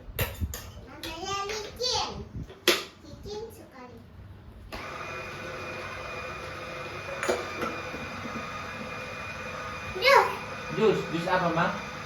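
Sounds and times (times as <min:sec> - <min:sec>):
juice machine motor whining: 0:04.7 - 0:12.0.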